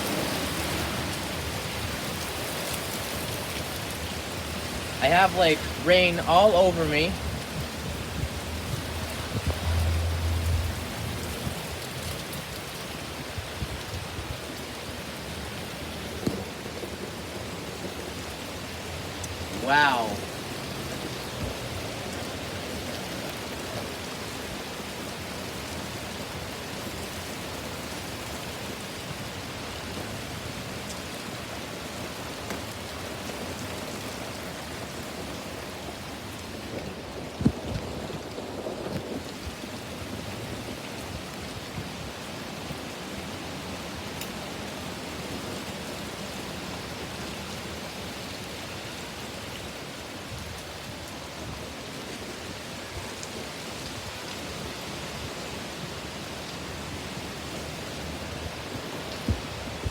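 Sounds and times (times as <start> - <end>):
heavy rain pouring: 0.0 - 59.9
strong wind: 7.1 - 30.8, 50.3 - 59.9.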